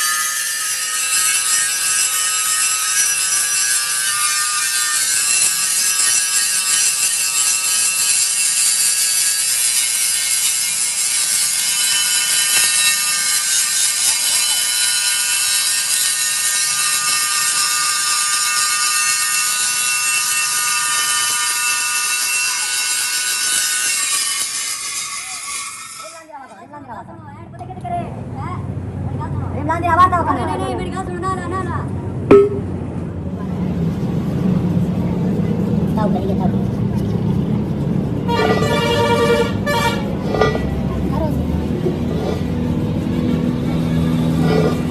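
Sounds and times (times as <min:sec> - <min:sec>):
angle grinder on metal: 0:00.0 - 0:26.3, 0:38.2 - 0:44.9.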